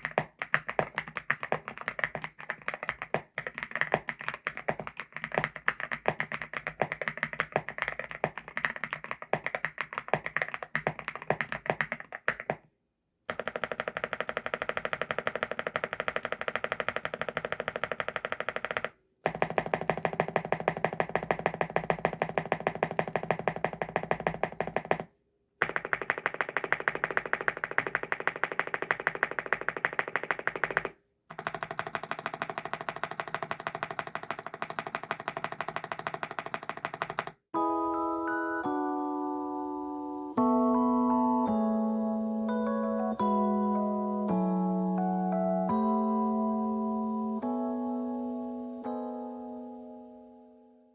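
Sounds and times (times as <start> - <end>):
fast typing on mechanical keyboard: 0.0 - 12.7, 13.3 - 37.5.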